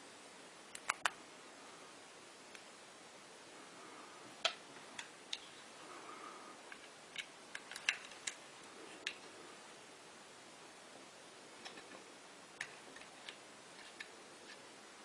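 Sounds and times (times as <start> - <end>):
small parts clicking and tapping: 6.7 - 8.4, 12.6 - 14.6.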